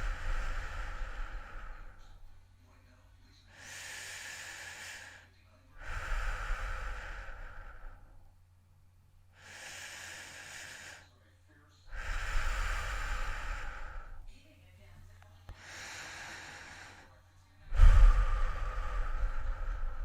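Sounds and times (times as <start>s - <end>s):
person breathing heavily: 0.0s - 2.3s, 3.5s - 8.3s, 9.4s - 11.2s, 11.9s - 14.3s, 15.5s - 20.0s.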